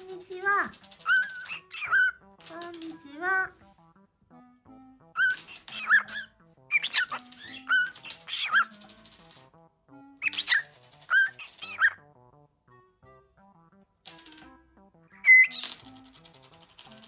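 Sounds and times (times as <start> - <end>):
soft background music: 0.0 - 17.0
cockatiel whistling: 1.0 - 2.2, 5.2 - 8.7, 10.2 - 12.0, 15.2 - 15.8.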